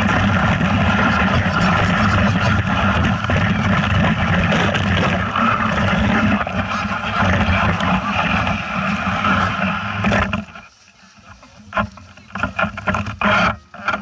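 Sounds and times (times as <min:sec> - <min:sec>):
heavy rushing noise: 0:00.0 - 0:10.7
vehicle engine running: 0:00.0 - 0:13.2.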